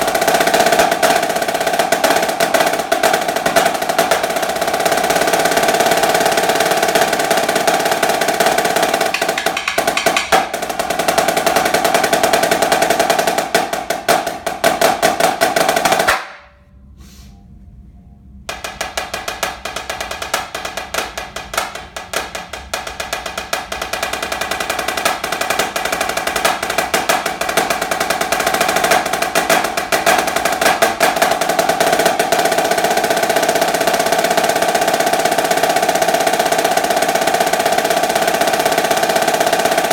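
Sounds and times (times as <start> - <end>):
snare drum rolls: 0.0 - 16.6, 18.5 - 39.9.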